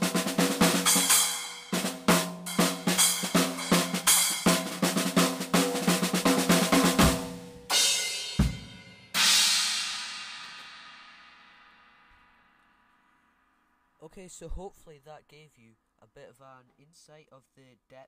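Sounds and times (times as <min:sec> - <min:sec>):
snare and tom hits: 0:00.0 - 0:11.3
cymbal crashes: 0:00.8 - 0:04.8, 0:07.1 - 0:12.6
deep drum hit: 0:08.4 - 0:08.9.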